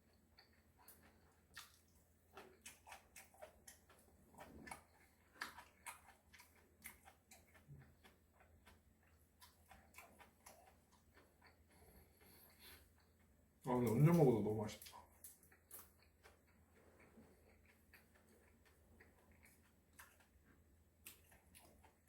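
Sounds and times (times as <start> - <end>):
chewing: 0.0 - 22.0
wet mouth clicks and smacks: 0.4 - 4.0.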